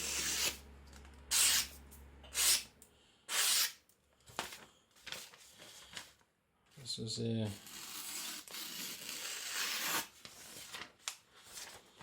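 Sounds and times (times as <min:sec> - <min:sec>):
blade slicing through paper: 0:00.0 - 0:00.6, 0:01.3 - 0:02.7, 0:03.3 - 0:03.8, 0:07.6 - 0:11.8.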